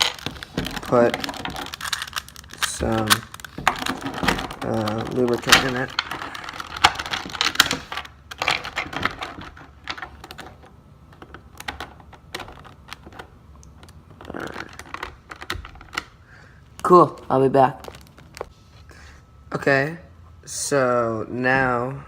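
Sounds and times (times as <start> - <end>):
plastic pieces clicking and clattering: 0.0 - 16.1.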